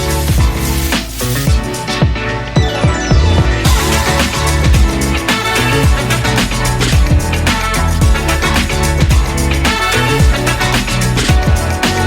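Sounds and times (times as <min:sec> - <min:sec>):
thudding kick drum: 0:00.3 - 0:00.6, 0:01.5 - 0:05.1, 0:05.8 - 0:06.1, 0:06.9 - 0:08.2, 0:09.0 - 0:09.4, 0:11.3 - 0:11.8
sustained synth chords: 0:01.5 - 0:11.9.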